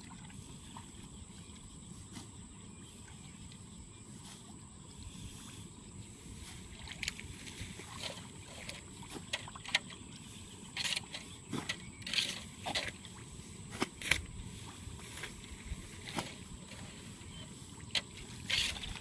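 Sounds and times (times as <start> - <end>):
wet scrapes and splashes in mud: 6.4 - 19.0.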